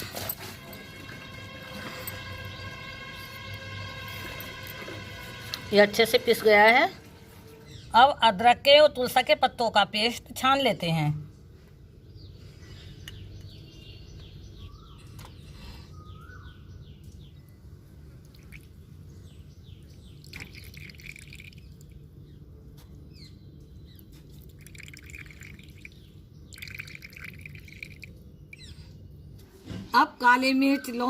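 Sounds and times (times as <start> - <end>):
low hum: 0.0 - 8.8
birds chirping: 11.9 - 29.6.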